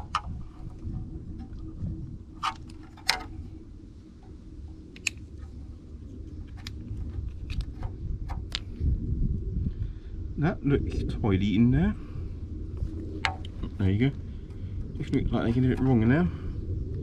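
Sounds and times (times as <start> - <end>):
low background rumble: 0.0 - 17.0
plastic clips snapping: 2.4 - 3.4, 4.9 - 5.3.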